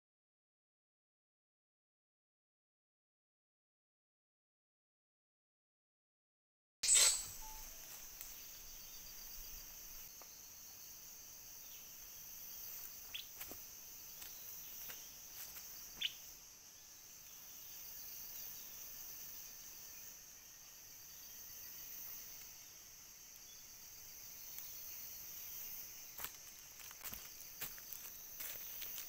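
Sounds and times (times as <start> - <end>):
short chirps: 6.8 - 7.8
insects chorus: 6.9 - 29.0.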